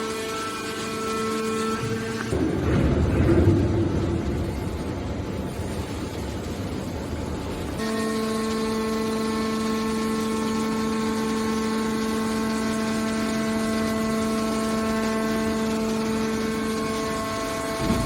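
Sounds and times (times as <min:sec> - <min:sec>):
hydraulic pump whine: 0:00.0 - 0:18.0.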